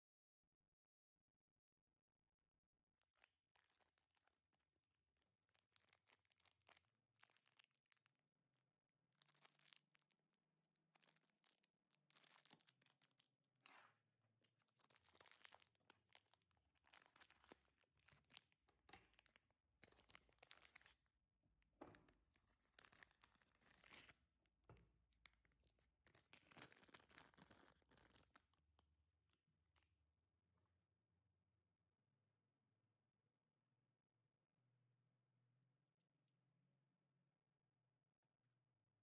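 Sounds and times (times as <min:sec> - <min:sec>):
biscuit packet tearing and crinkling: 0:03.2 - 0:04.6, 0:05.5 - 0:08.2, 0:09.1 - 0:10.2, 0:11.0 - 0:13.3, 0:14.5 - 0:21.1, 0:22.4 - 0:24.2, 0:26.0 - 0:28.6.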